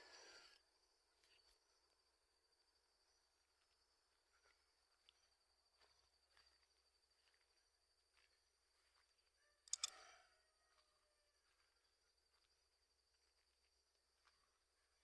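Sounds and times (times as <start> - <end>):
crickets trilling: 0.0 - 15.0
soft clicks: 9.7 - 10.0.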